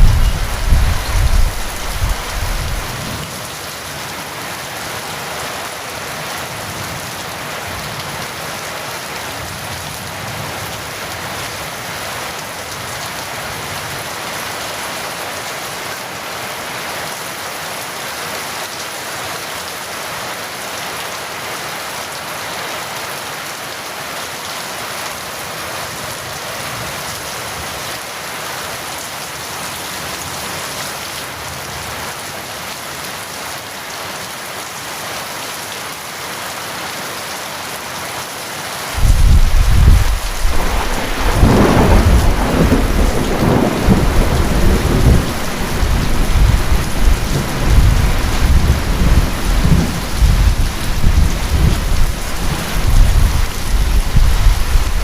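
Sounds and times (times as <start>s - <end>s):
low thunder rumble: 0.0s - 3.1s, 39.0s - 55.0s
steady rain falling: 0.0s - 55.0s.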